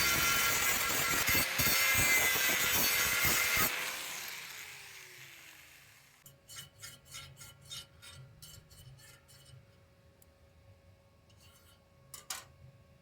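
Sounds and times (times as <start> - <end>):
filing on metal tubing: 0.0 - 3.7, 6.2 - 9.7
power tool spinning down: 0.0 - 6.2.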